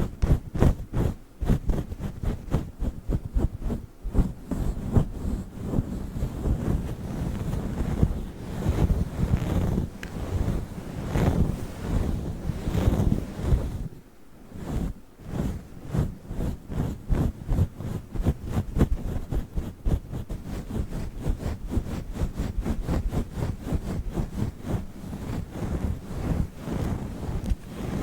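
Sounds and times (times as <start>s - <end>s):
windscreen rubbed on microphone: 0.0s - 28.0s.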